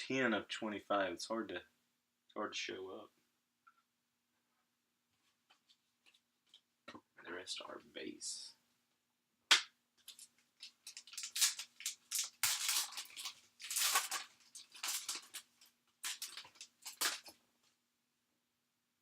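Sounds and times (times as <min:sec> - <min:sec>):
sharp snap: 0:09.5 - 0:09.8.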